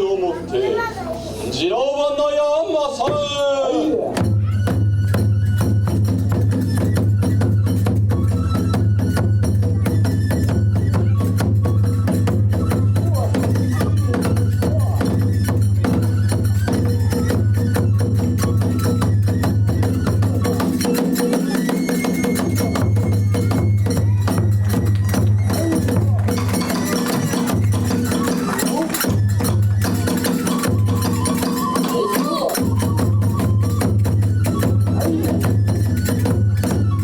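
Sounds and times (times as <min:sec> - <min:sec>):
fast driving drumming: 0:11.6 - 0:37.0
small hand cymbals clashing: 0:20.5 - 0:32.9.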